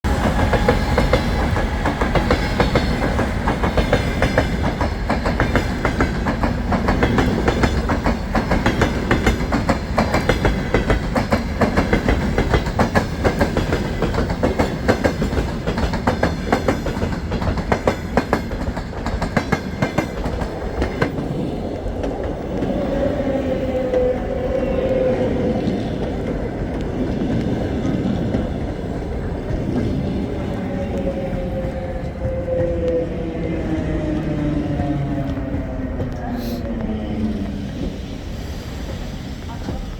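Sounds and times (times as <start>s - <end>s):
train wheels clattering over rails: 0.1s - 24.2s.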